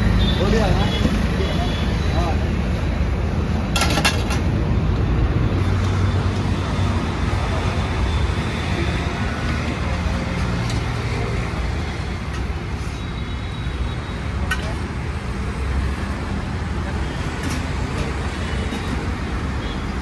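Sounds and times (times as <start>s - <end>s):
road traffic hum: 0.0s - 20.0s.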